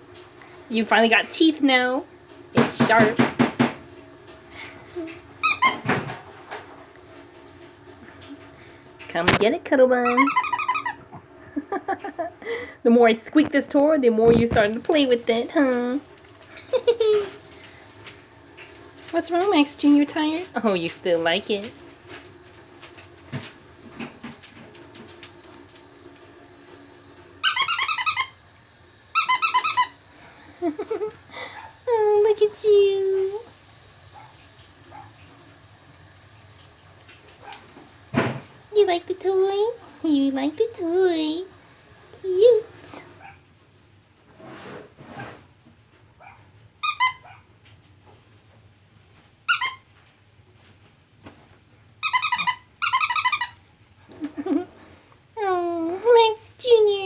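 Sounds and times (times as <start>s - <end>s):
squeaky pet toy squeaking: 5.4s - 5.9s, 10.0s - 11.0s, 27.4s - 28.3s, 29.2s - 30.0s, 46.8s - 47.2s, 49.5s - 49.8s, 52.0s - 53.6s.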